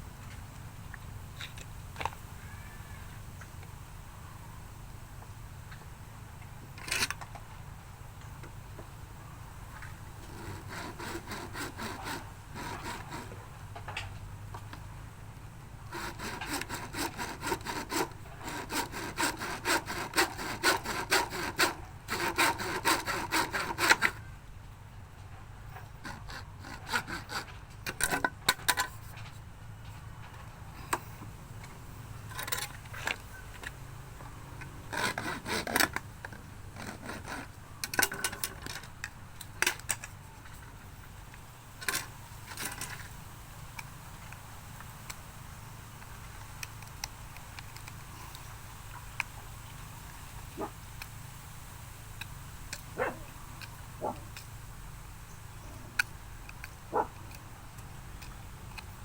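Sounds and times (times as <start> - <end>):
hand saw strokes: 6.8 - 7.2, 9.8 - 13.9, 15.8 - 24.3, 25.7 - 29.3, 32.3 - 38.9.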